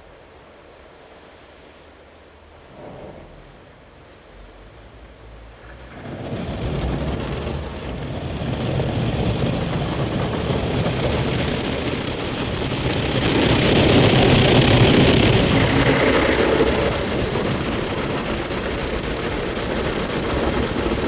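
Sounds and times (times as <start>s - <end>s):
car wash machinery rushing: 5.3s - 21.0s.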